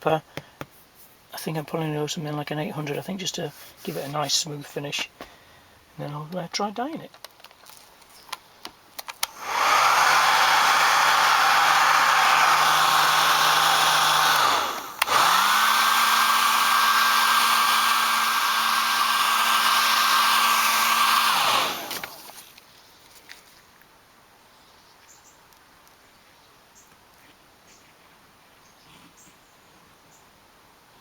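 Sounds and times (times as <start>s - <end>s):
heat gun blowing: 9.2s - 22.5s.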